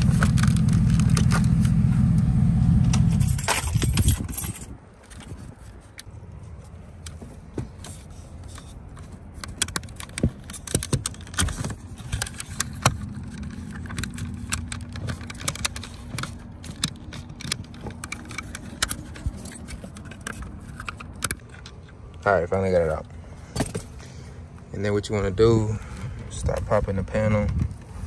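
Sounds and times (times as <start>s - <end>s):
low steady hum: 0.0s - 5.3s
hand tools clicking and rattling: 3.0s - 6.1s, 7.1s - 22.2s.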